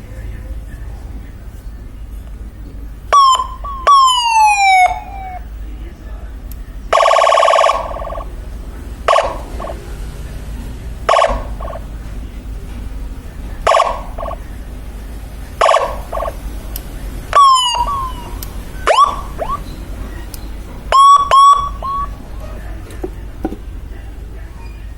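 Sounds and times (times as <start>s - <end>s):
electronic chirps: 3.1s - 5.4s, 9.1s - 9.8s, 11.1s - 11.8s, 13.7s - 14.4s, 15.6s - 16.5s, 17.3s - 20.3s, 20.9s - 22.4s
electronic horn blasts with echo: 9.1s - 9.8s, 11.1s - 11.8s, 20.9s - 22.4s.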